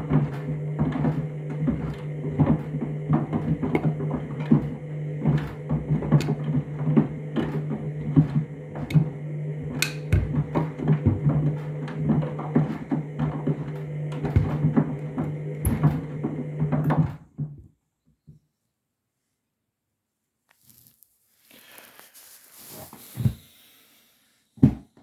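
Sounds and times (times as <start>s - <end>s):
load sloshing and knocking: 0.0s - 17.2s
washing machine motor hum: 0.0s - 17.6s.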